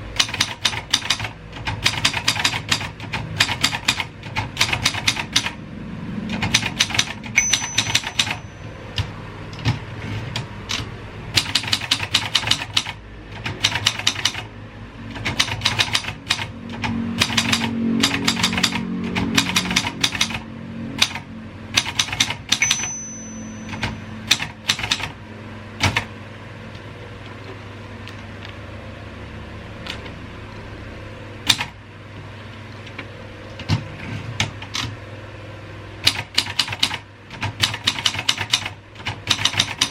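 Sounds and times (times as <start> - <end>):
typewriter key strikes: 0.2 - 5.5, 6.4 - 8.4, 17.2 - 20.4, 21.0 - 23.0, 23.7 - 25.1, 36.0 - 39.9
typewriter bell ring: 7.4 - 8.8, 22.5 - 24.5.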